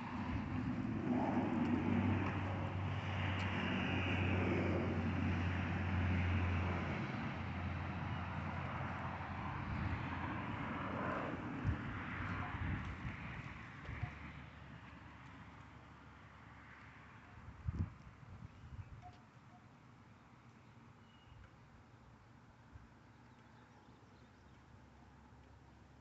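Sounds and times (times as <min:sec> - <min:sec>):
vehicle engine humming: 0:00.0 - 0:16.4.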